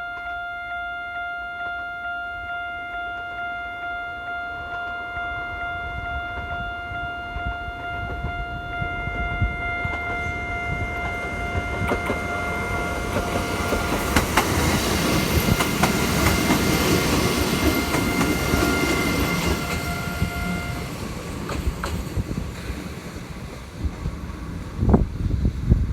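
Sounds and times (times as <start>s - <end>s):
train wheels clacking on rails: 9.8s - 24.8s.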